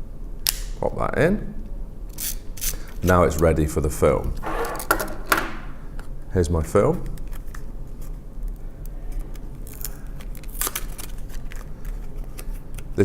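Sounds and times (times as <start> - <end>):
packaging rustling: 9.7 - 13.0.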